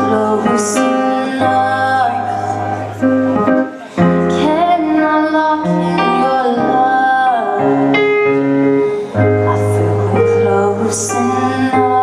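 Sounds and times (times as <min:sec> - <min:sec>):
pop song with keyboard chords: 0:00.0 - 0:12.0.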